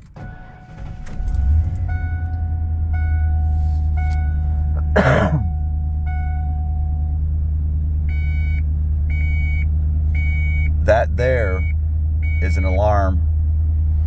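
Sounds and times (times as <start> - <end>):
vehicle warning chime beeping: 0.0 - 7.3, 8.1 - 13.1
truck engine idling: 0.0 - 14.0
cough-like rasp: 4.8 - 5.5.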